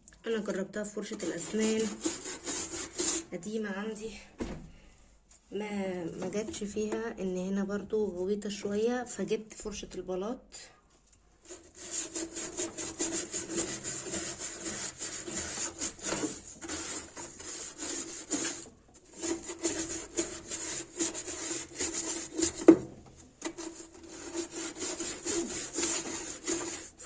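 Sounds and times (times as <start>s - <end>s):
brush scrubbing metal: 1.1s - 3.3s, 11.4s - 27.0s.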